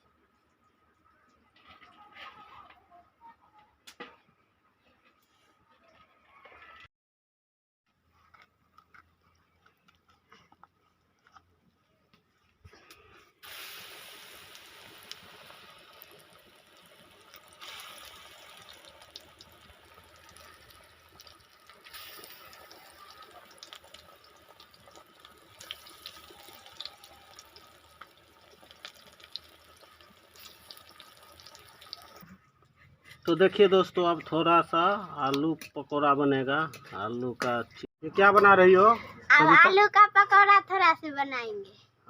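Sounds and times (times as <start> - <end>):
water running from a tap: 13.4 - 32.2.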